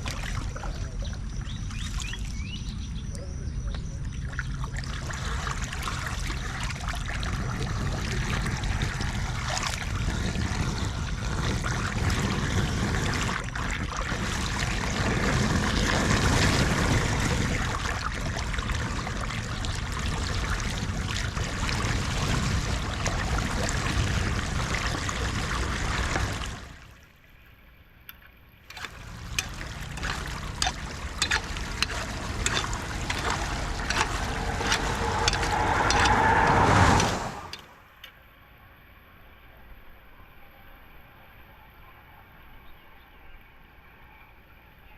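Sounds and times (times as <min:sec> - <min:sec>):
floodwater rushing into storm drain: 0:04.2 - 0:27.0, 0:28.7 - 0:37.8.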